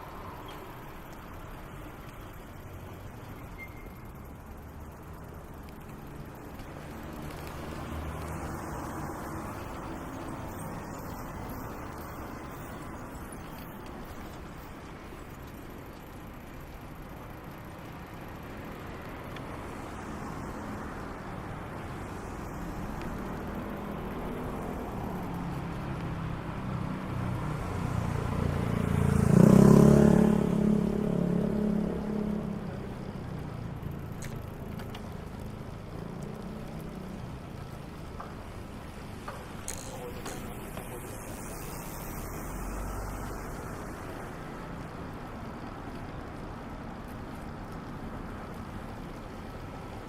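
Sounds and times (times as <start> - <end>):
motor vehicle passing: 21.8 - 46.0.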